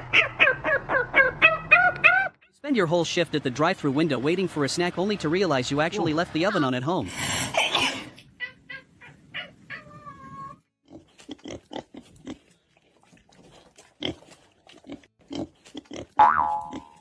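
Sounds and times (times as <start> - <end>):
animal calls: 0.0 - 2.6, 5.9 - 10.6.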